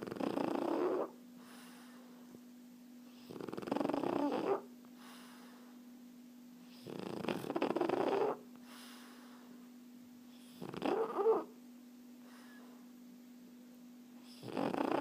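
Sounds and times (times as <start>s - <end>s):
dog snoring: 0.0s - 2.0s, 3.1s - 5.6s, 6.7s - 8.4s, 10.3s - 11.6s, 14.2s - 15.0s.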